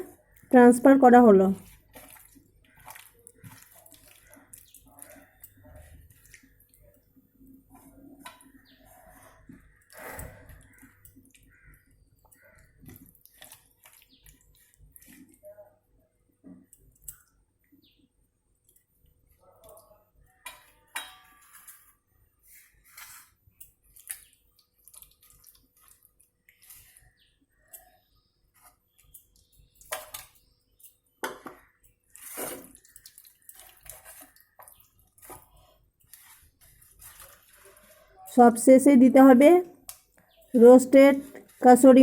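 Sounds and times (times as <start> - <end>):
bowl and utensils clinking: 20.5 - 21.9.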